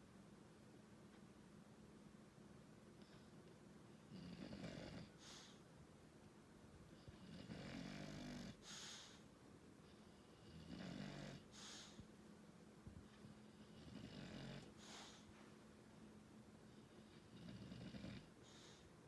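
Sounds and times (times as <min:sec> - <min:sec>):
dog snoring: 0:03.9 - 0:05.6, 0:07.0 - 0:09.2, 0:09.9 - 0:12.0, 0:13.4 - 0:15.3, 0:16.7 - 0:18.8.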